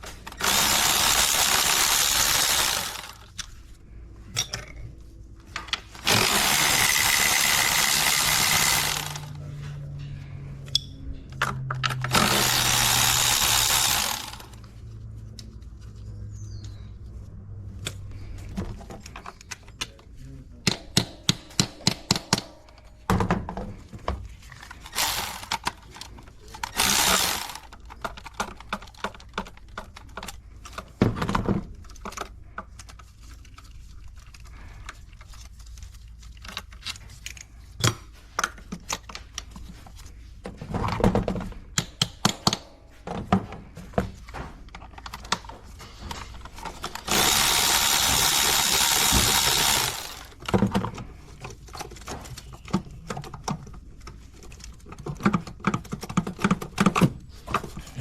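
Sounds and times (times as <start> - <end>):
power tool running: 0.3 - 3.2, 6.0 - 9.4, 12.1 - 14.6, 24.8 - 25.8, 26.6 - 27.7, 46.8 - 50.4
hand ratchet clicking: 0.3 - 3.4, 6.0 - 9.3, 12.1 - 14.6, 24.9 - 25.8, 26.6 - 27.7, 46.8 - 50.4.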